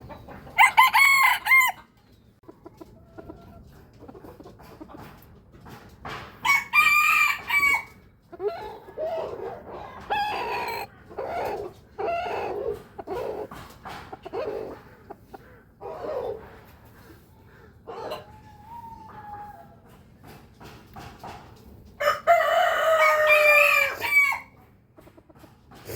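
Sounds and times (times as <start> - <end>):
chickens clucking: 0.0 - 25.9
rooster crowing: 0.6 - 1.8, 6.4 - 8.0, 10.1 - 10.9, 22.0 - 24.5.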